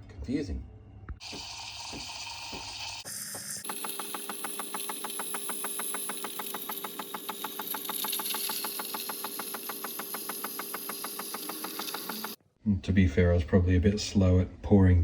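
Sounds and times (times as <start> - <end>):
espresso machine pump pulsing: 1.2 - 12.4
steam hiss: 1.2 - 12.4
machine hum: 3.6 - 12.4.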